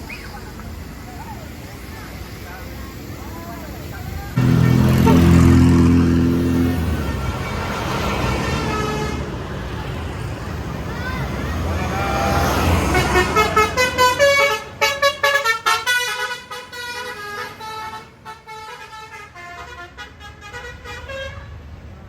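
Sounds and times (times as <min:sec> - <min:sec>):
bus engine rumble: 0:00.0 - 0:22.0
multi-tone bus horn tune: 0:04.4 - 0:09.6, 0:11.5 - 0:21.6.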